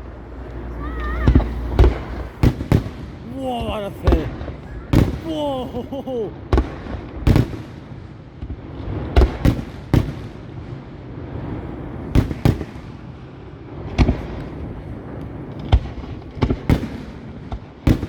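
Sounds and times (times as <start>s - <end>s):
fireworks bangs: 0.0s - 10.6s.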